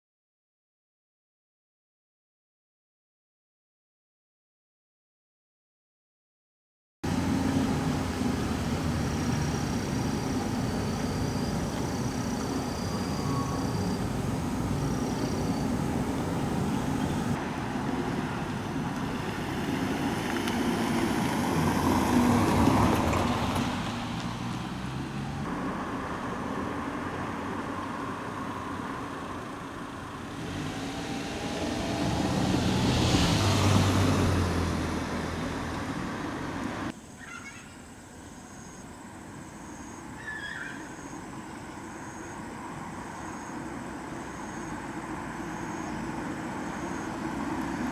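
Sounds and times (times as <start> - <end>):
steady traffic noise: 7.0 - 37.2, 37.8 - 47.9
vehicle passing close by: 7.1 - 36.9.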